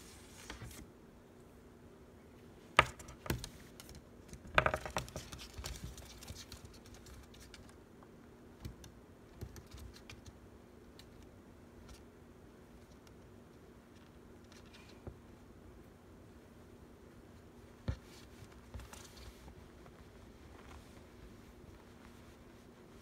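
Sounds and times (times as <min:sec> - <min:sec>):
low steady hum: 0:00.0 - 0:23.0
small clicks and taps: 0:08.6 - 0:12.0.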